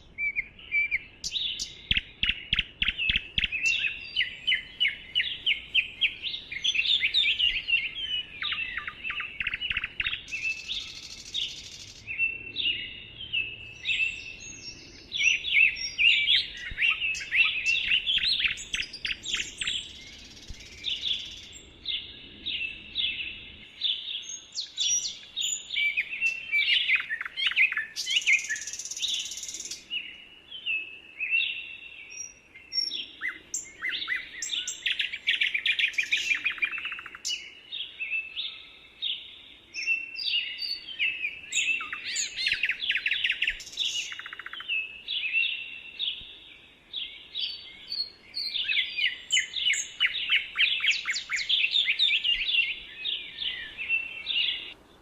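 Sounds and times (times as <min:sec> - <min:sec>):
songbirds singing and chirping: 0:00.0 - 0:55.0.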